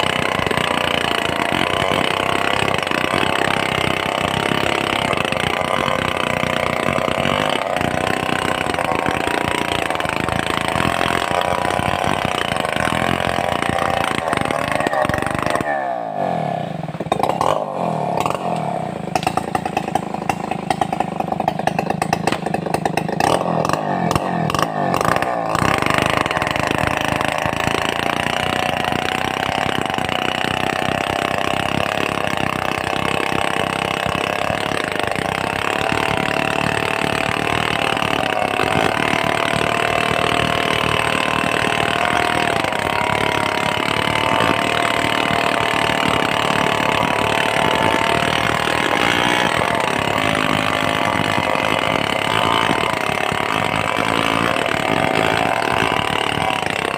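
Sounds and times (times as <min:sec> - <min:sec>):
chainsaw engine running: 0:00.0 - 0:56.9.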